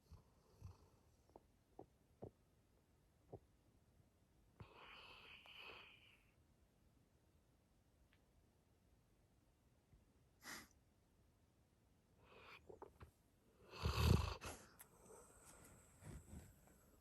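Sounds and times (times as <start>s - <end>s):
dog snoring: 13.7s - 14.7s.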